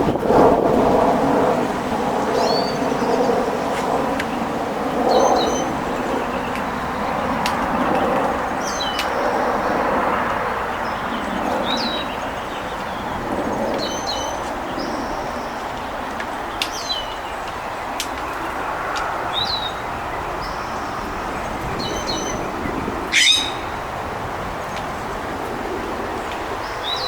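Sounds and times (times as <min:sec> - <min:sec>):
wind buffeting microphone: 0:00.0 - 0:27.0
songbird chirping: 0:19.3 - 0:24.0.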